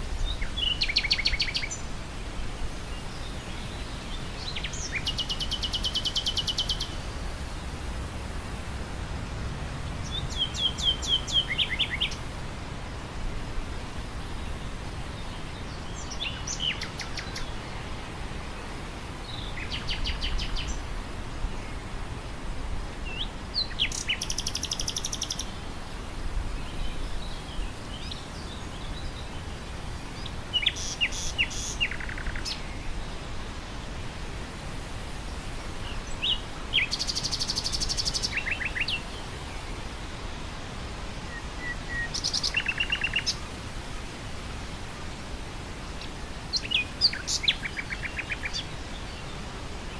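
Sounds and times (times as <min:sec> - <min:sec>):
wind through grass: 0:00.0 - 0:49.9
nightingale singing trills: 0:00.1 - 0:01.9, 0:02.9 - 0:07.0, 0:10.0 - 0:12.2, 0:15.2 - 0:17.7, 0:19.2 - 0:20.9, 0:23.0 - 0:25.6, 0:30.2 - 0:33.0, 0:35.8 - 0:39.7, 0:41.3 - 0:43.4, 0:46.0 - 0:49.4.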